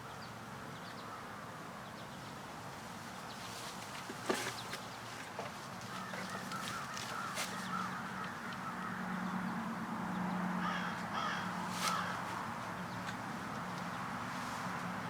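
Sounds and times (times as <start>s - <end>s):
crows cawing: 5.9s - 9.3s, 10.6s - 12.3s.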